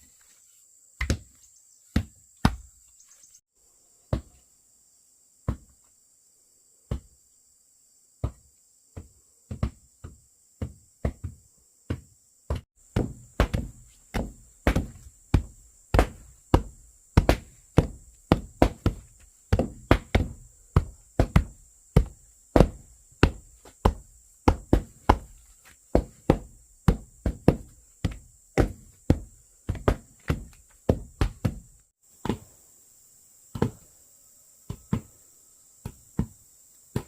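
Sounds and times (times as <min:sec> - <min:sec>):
hand tool knocking on wood: 0:09.0 - 0:25.4.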